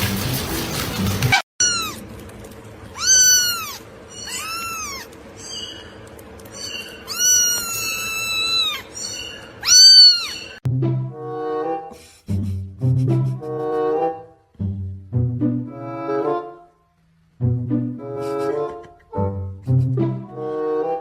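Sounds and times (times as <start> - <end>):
cat meowing: 1.6 - 2.0, 3.0 - 5.7, 6.6 - 10.6.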